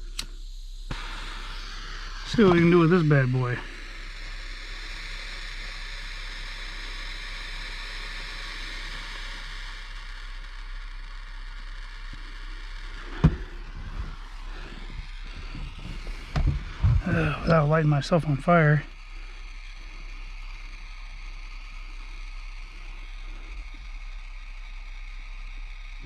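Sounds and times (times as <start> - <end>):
torch lighter hissing: 0.0 - 26.0
sharp click: 0.1 - 0.4.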